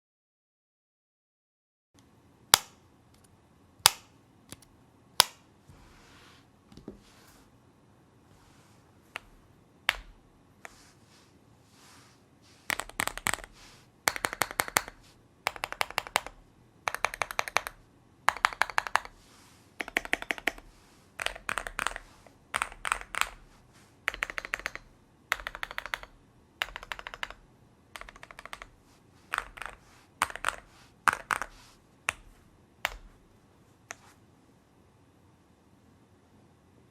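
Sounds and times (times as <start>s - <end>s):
mechanical keyboard typing: 12.7s - 19.2s, 19.8s - 23.5s, 24.1s - 33.1s.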